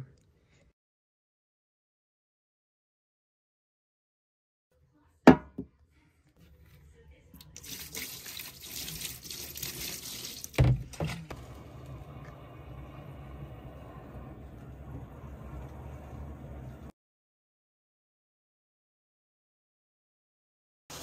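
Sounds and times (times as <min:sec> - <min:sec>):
washing machine thumps: 0:05.3 - 0:05.7, 0:10.6 - 0:11.0
water running in with hiss: 0:07.6 - 0:10.6
washing machine humming: 0:07.6 - 0:16.9.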